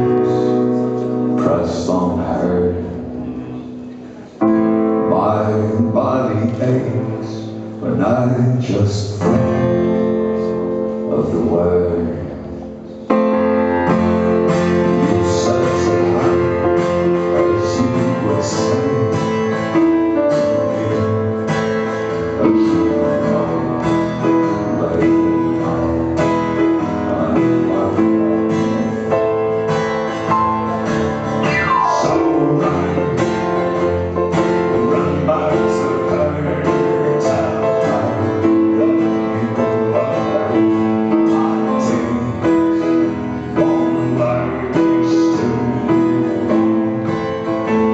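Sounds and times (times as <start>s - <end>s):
guitar sustained notes: 12.2s - 44.6s
live band playing: 12.4s - 47.9s.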